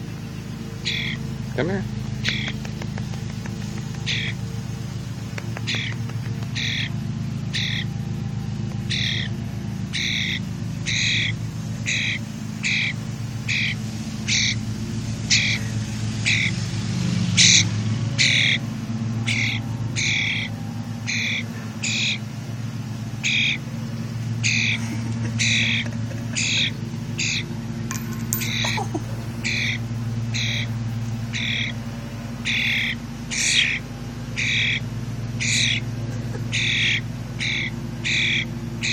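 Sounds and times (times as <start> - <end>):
bird squawking: 36.6 - 38.9.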